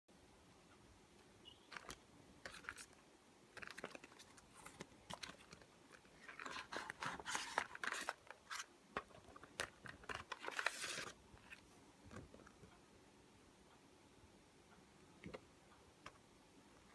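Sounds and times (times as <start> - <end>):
packaging crinkling: 1.7 - 8.7, 9.3 - 11.2.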